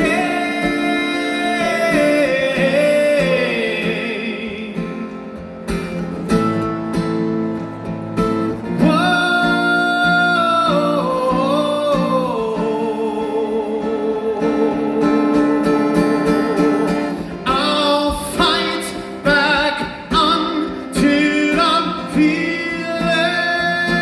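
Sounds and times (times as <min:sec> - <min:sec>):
acoustic guitar chords: 0:00.0 - 0:24.0.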